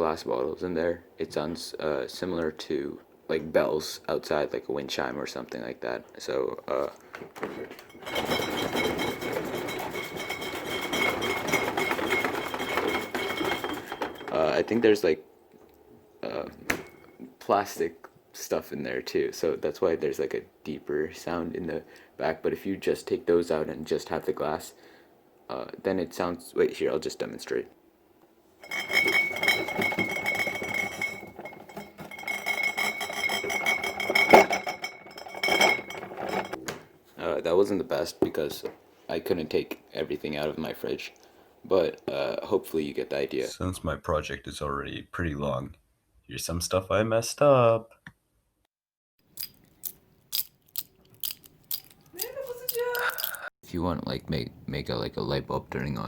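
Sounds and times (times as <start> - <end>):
plastic items rattling: 7.3 - 15.0, 28.7 - 36.6
glass bottles clinking: 7.4 - 14.8, 28.6 - 36.6.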